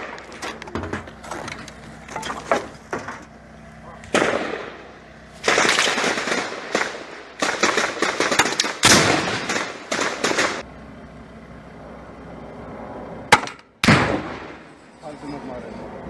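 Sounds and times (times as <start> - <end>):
loud echoing bangs: 4.1 - 10.6, 13.3 - 14.7.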